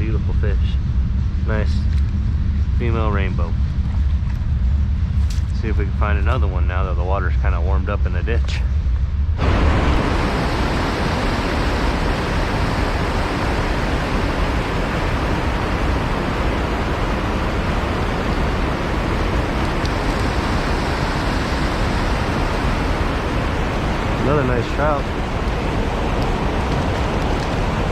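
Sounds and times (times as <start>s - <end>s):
creek water rushing: 10.0s - 27.9s.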